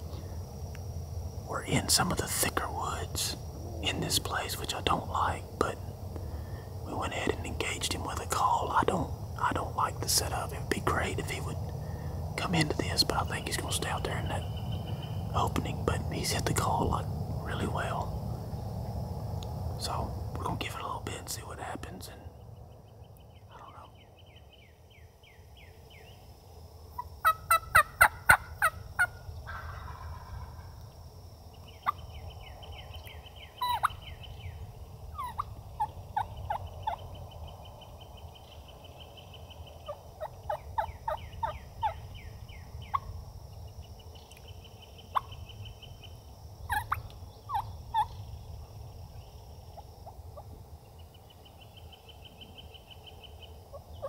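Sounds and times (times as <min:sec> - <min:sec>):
wild turkey calling: 0:26.9 - 0:31.0, 0:31.6 - 0:54.0
bird trilling: 0:31.7 - 0:37.6, 0:38.5 - 0:43.1, 0:45.0 - 0:48.5.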